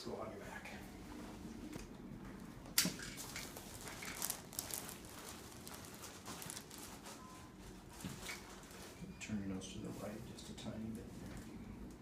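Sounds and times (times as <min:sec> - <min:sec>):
clothing rustling on padded table: 0:03.2 - 0:09.0.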